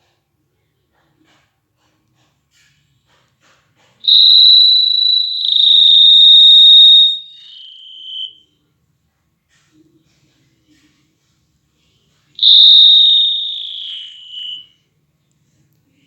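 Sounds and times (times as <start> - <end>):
smartwatch speaker high-pitched tone: 4.1 - 8.4, 12.4 - 14.6.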